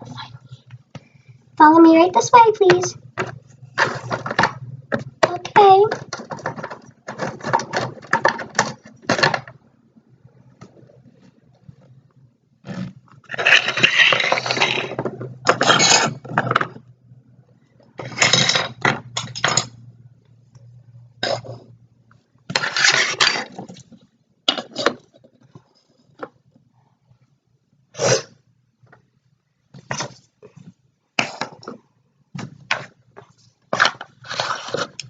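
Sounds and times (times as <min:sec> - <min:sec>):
plastic toys clattering and scraping: 0:01.6 - 0:09.6, 0:12.6 - 0:16.9, 0:17.9 - 0:19.8, 0:22.5 - 0:26.7, 0:29.7 - 0:35.0.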